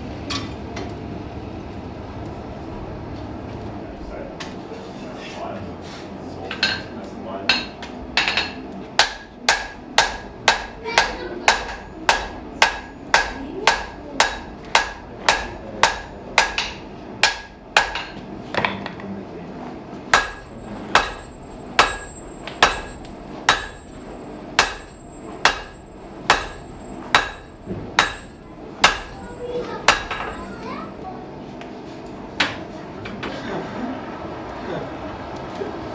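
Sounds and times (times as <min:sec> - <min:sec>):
hammer ringing on iron and anvil: 0:07.5 - 0:18.2, 0:20.1 - 0:30.4.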